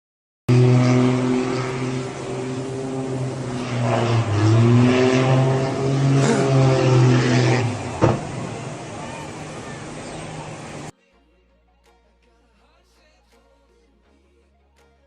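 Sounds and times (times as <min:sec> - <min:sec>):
engine humming: 0:00.5 - 0:10.9.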